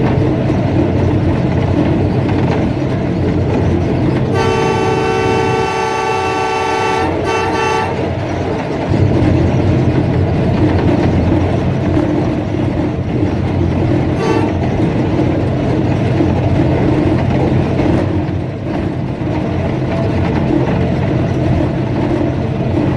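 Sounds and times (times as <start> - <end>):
train rumbling past: 0.0 - 22.9
locomotive air horn: 4.3 - 8.4, 14.1 - 15.0.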